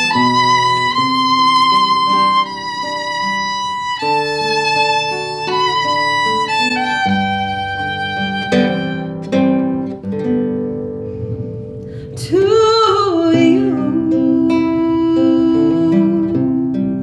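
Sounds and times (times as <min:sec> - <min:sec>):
violin slow melody: 0:00.0 - 0:10.1
acoustic guitar accompaniment: 0:00.0 - 0:17.0.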